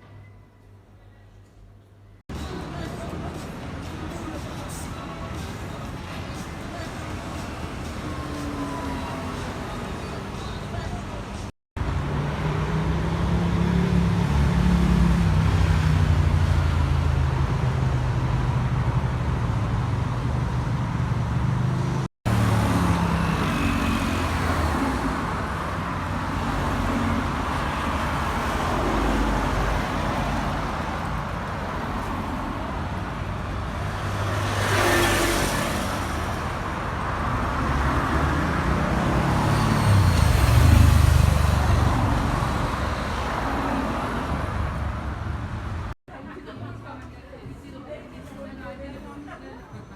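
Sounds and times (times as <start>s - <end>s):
traffic engines rumbling: 0.7s - 49.9s
vehicle passing close: 33.8s - 45.9s.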